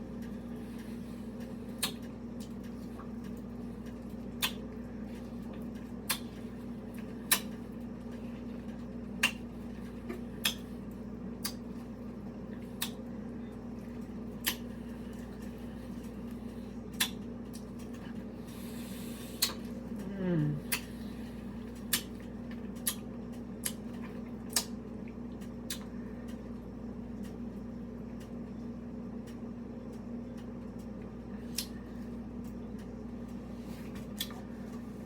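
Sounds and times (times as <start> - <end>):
steady low hum: 0.0 - 35.0
wet mouth smacking clicks: 1.8 - 2.1, 4.4 - 4.6, 6.1 - 6.3, 7.3 - 7.6, 9.2 - 9.4, 10.4 - 10.6, 11.4 - 11.6, 12.8 - 13.0, 14.4 - 14.7, 16.9 - 17.7, 19.4 - 19.6, 20.7 - 20.9, 21.8 - 22.1, 22.8 - 23.8, 24.5 - 24.8, 25.6 - 25.9, 31.5 - 31.8, 34.1 - 34.4.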